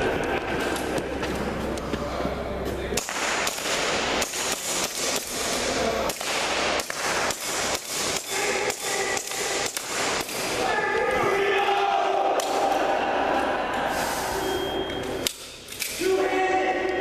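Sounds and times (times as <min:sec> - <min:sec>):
airsoft pistol shots: 0:03.0 - 0:10.6.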